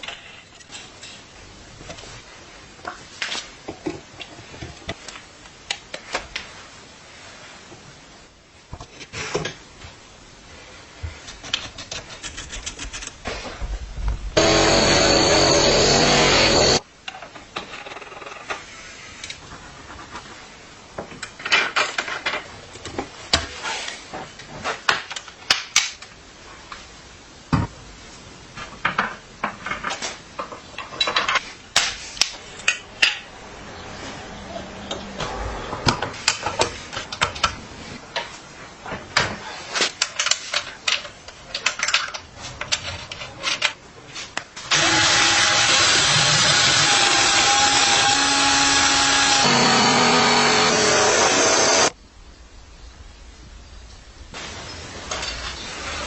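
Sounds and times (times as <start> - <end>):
loud steady noise: 14.0 - 16.8.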